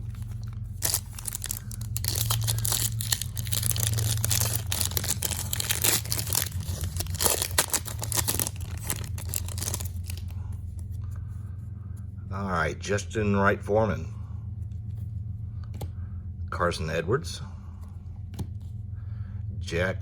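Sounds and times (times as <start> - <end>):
foil wrapper tearing and crinkling: 0.0 - 10.3
steady low hum: 0.0 - 20.0.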